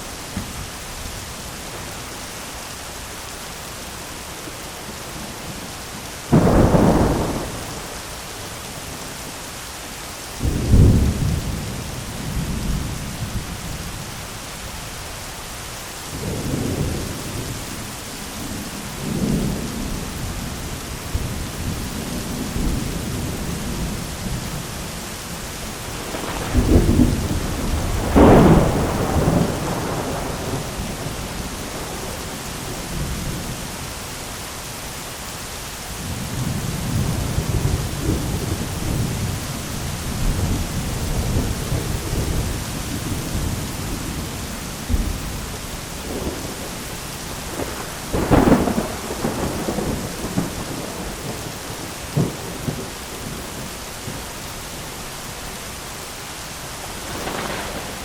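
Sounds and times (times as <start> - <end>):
heavy rain on an umbrella: 0.0 - 58.0
thunder claps and rumbles: 6.3 - 8.4, 25.7 - 33.6, 36.0 - 54.2, 57.0 - 58.0.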